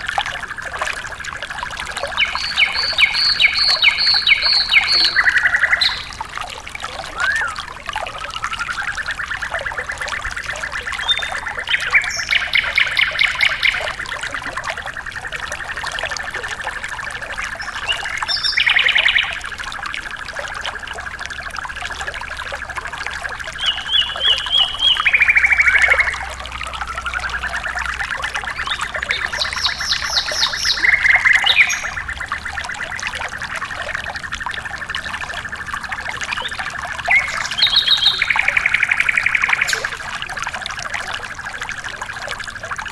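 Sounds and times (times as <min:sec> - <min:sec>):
trickling water: 0:00.0 - 0:42.9
bird trilling: 0:02.2 - 0:06.2, 0:07.1 - 0:07.6, 0:28.5 - 0:32.0, 0:36.3 - 0:40.2
quick pulsed bird phrases: 0:02.2 - 0:06.3, 0:28.5 - 0:32.1, 0:36.3 - 0:40.2.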